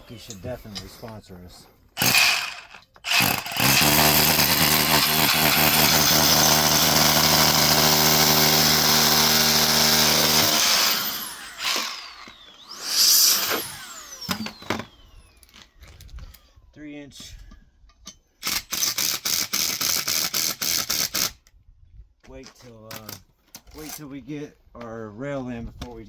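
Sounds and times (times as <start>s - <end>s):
impact wrench hammering a bolt: 2.0s - 14.9s
motor whine spinning down: 10.6s - 15.5s.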